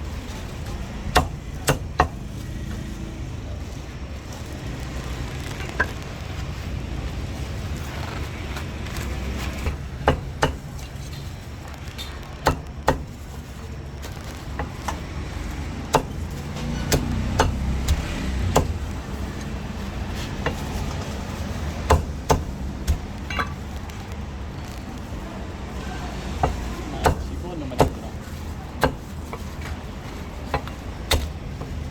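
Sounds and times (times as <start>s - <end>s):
street traffic hum: 0.0s - 31.9s
cleaver chopping on wood: 1.1s - 2.3s, 9.6s - 10.8s, 12.4s - 13.4s, 14.5s - 19.4s, 20.1s - 23.6s, 26.3s - 28.2s, 28.8s - 29.7s, 30.5s - 31.8s.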